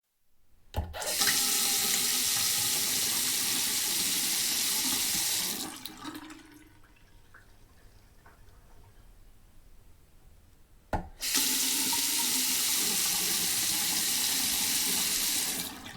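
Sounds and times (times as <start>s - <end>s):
sink tap running: 1.0s - 5.7s, 11.0s - 15.9s.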